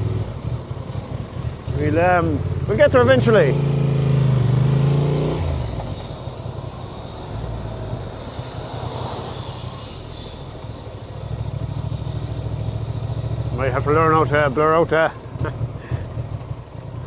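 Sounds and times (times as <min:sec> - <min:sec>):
motorcycle engine running: 0:00.0 - 0:17.0
steady rushing noise: 0:05.4 - 0:15.3.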